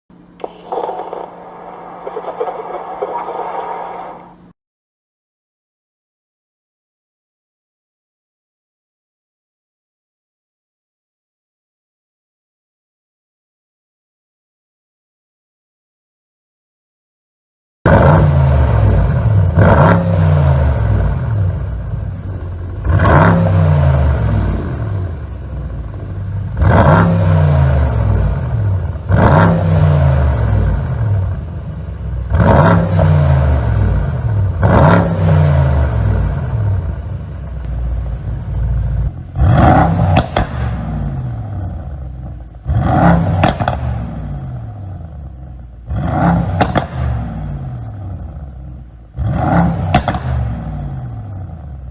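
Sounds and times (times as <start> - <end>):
car engine revving: 0.4 - 4.5, 17.9 - 51.9
exhaust pops and crackles: 37.5 - 44.9, 45.9 - 48.2, 49.6 - 50.7.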